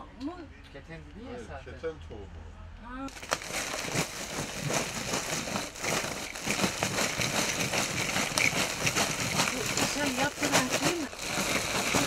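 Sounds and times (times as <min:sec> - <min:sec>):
rustling with small clicks: 0:03.1 - 0:12.0.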